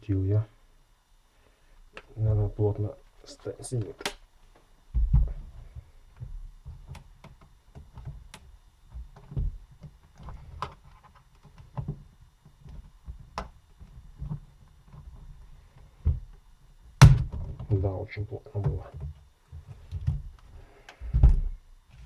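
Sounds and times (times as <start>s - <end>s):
heavier thump: 4.9s - 5.4s, 17.0s - 17.4s.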